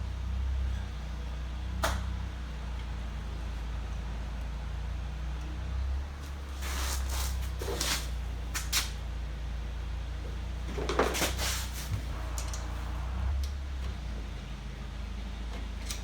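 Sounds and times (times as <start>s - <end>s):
steady low hum: 11.6s - 15.3s.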